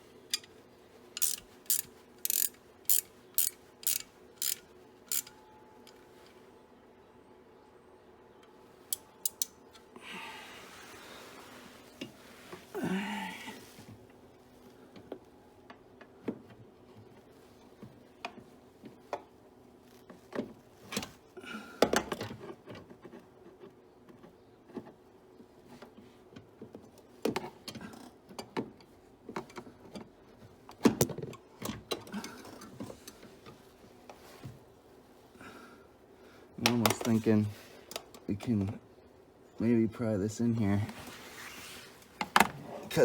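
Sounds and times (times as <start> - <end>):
faint steady hum: 0.0 - 43.0
metallic clicks and clunks of tool: 1.2 - 6.0, 8.9 - 9.9.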